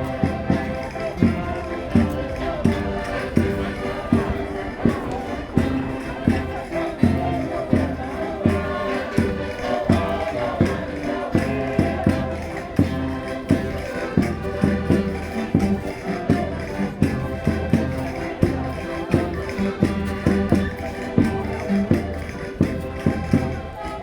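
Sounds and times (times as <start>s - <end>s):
concertinas playing folk dance tune: 0.0s - 24.0s.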